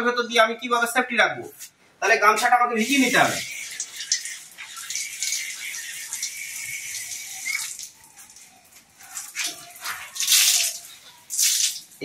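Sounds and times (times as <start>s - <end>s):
splashes from wet towel squeezed: 2.8s - 12.0s
tap water running onto towel: 2.8s - 12.0s.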